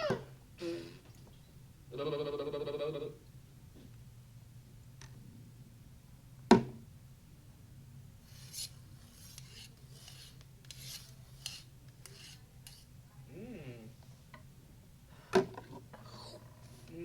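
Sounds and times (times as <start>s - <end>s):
rasping scraping strokes: 8.3s - 12.9s.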